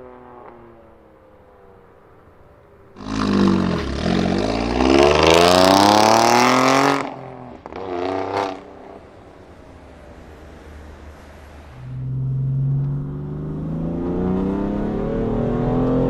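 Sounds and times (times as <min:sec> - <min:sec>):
car engine accelerating hard: 0:03.0 - 0:09.1, 0:10.6 - 0:16.0.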